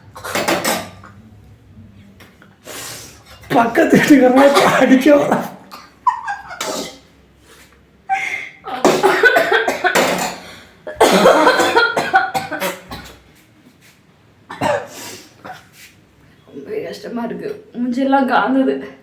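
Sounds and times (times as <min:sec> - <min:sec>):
person coughing harshly: 0:00.0 - 0:00.9, 0:04.0 - 0:07.1, 0:08.7 - 0:13.2, 0:14.5 - 0:15.7.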